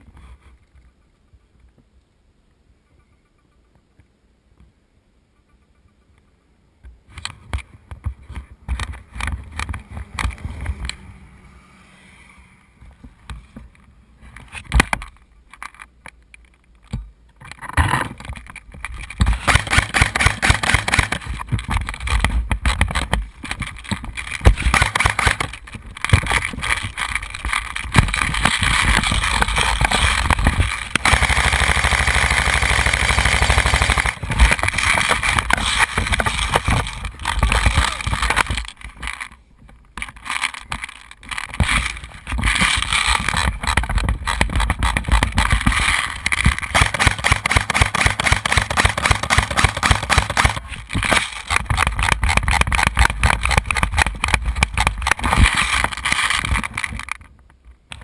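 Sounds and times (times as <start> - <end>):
sharp clicks and knocks: 5.4 - 11.0, 12.9 - 58.0
vehicle driving noise: 8.2 - 15.0.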